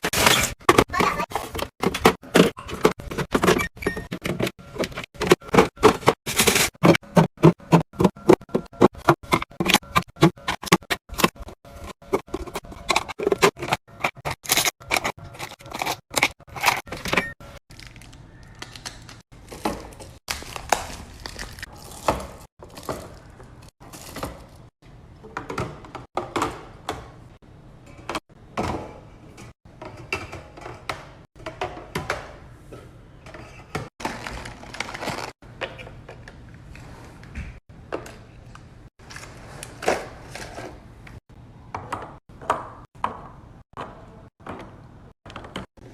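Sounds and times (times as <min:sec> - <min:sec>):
containers knocking and scraping: 0:00.0 - 0:17.4.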